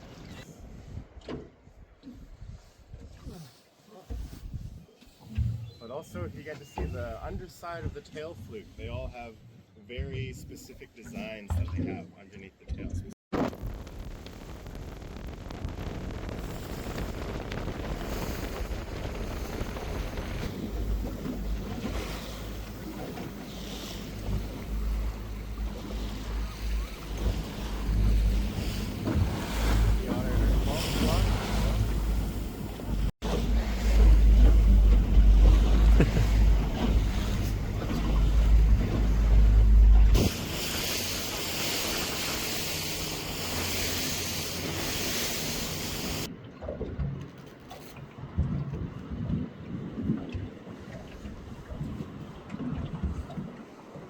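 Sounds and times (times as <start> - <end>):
sea water washing around boat: 0.0 - 12.0, 13.4 - 54.0
wind: 0.0 - 54.0
wind buffeting microphone: 4.2 - 6.3.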